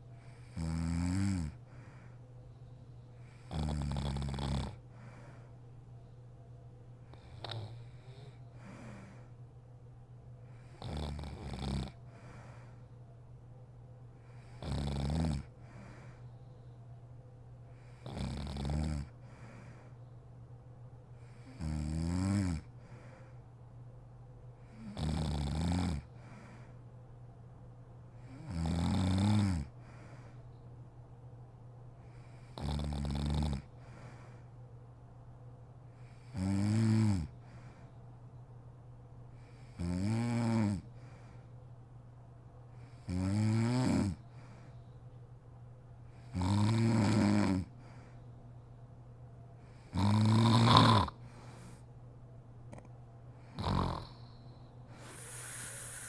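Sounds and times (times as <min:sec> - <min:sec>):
steady low hum: 0:00.0 - 0:25.0, 0:44.0 - 0:50.4, 0:51.0 - 0:56.0
woman snoring: 0:00.5 - 0:01.6, 0:03.4 - 0:04.8, 0:10.8 - 0:12.0, 0:14.6 - 0:15.5, 0:18.0 - 0:19.1, 0:21.4 - 0:22.7, 0:24.8 - 0:26.0, 0:28.3 - 0:29.7, 0:43.1 - 0:44.2, 0:46.3 - 0:47.7, 0:49.9 - 0:51.2, 0:53.5 - 0:54.2, 0:55.0 - 0:56.0.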